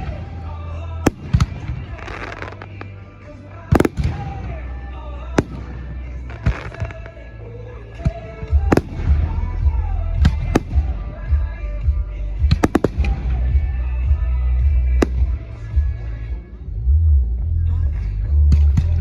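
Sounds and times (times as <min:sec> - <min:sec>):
fireworks bursting with sharp bangs: 0:00.0 - 0:16.3
music through loudspeakers: 0:00.0 - 0:19.0
low booming rumble: 0:08.4 - 0:19.0.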